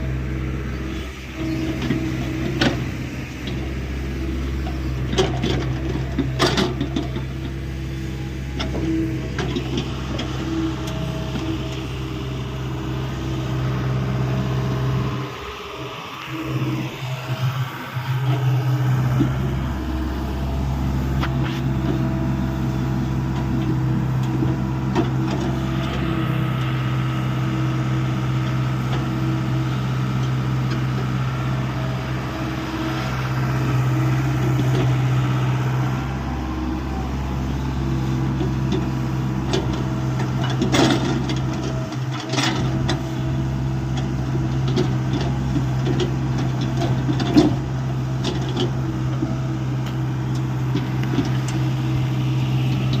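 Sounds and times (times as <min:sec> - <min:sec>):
excavator diesel engine running: 0:00.0 - 0:53.0.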